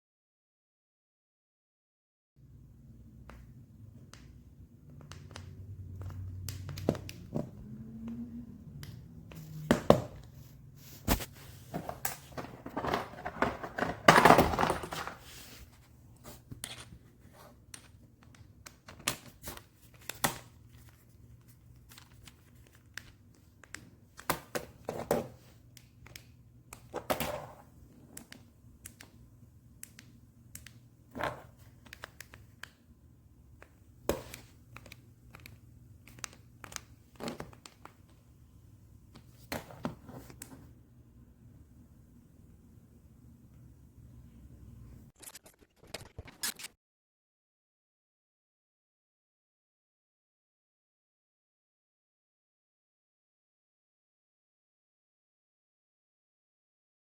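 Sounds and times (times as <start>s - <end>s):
rustling and crinkling: 10.2s - 17.7s
objects clicking and knocking: 11.1s - 15.3s.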